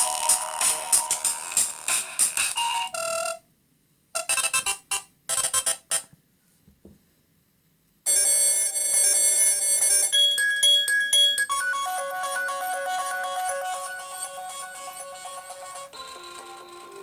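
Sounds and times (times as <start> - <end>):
phone ringtones: 8.1 - 17.0.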